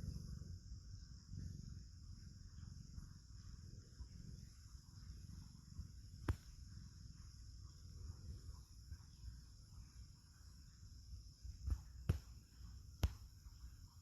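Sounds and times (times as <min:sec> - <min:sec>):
cat snoring: 0:00.0 - 0:06.1.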